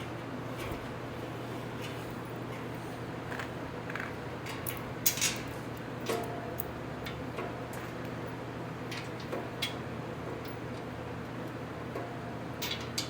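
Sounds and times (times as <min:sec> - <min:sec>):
metal parts clicking and clinking: 0:04.5 - 0:07.2, 0:12.6 - 0:13.0.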